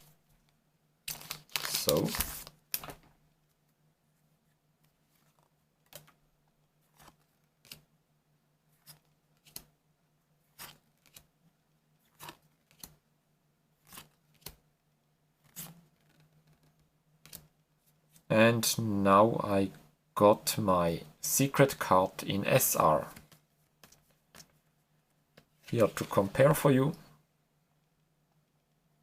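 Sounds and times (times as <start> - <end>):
card pack rustling: 1.1 - 3.0
cards being flipped: 1.1 - 3.1, 6.9 - 7.8, 8.8 - 9.7, 10.5 - 11.3, 12.1 - 13.0, 13.8 - 14.6.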